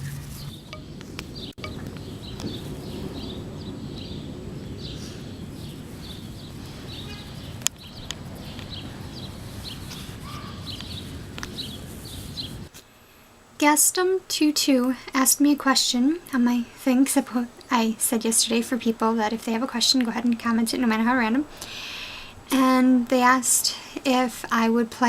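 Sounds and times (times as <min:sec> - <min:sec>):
small birds chirping: 0:00.0 - 0:12.7.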